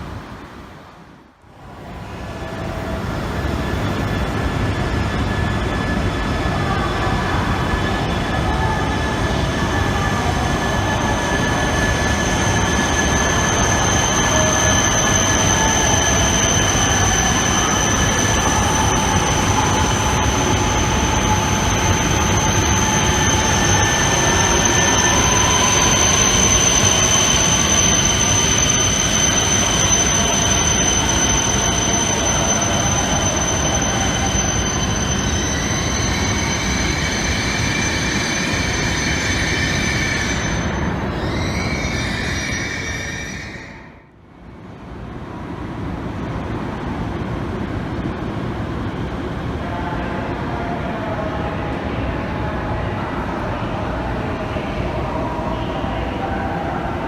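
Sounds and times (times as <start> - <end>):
train running noise: 0.0 - 57.0
high-pitched squeal: 4.4 - 44.1.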